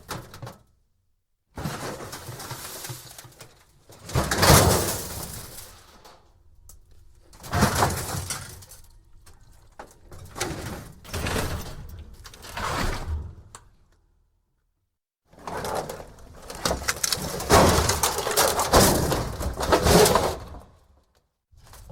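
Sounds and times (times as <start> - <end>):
scrap metal rattling and scraping: 4.0 - 13.9.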